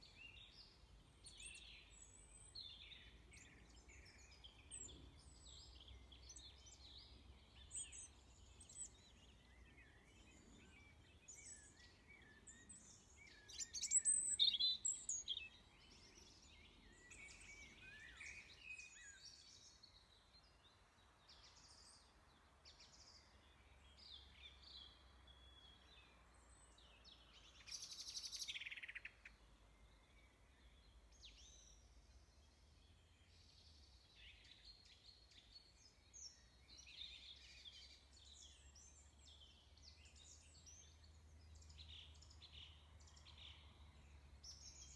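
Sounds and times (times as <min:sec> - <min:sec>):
small birds chirping: 0:00.0 - 0:44.9.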